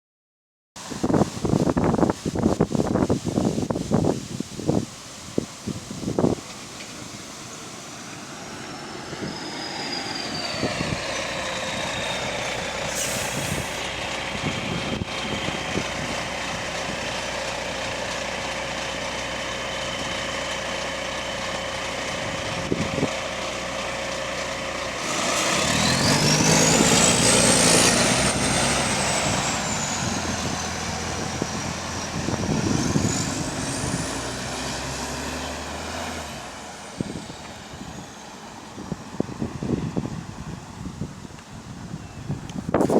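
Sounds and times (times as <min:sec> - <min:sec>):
bus engine whine: 0:00.8 - 0:42.9
bus engine running: 0:05.0 - 0:42.9
hissing surge: 0:07.2 - 0:13.9.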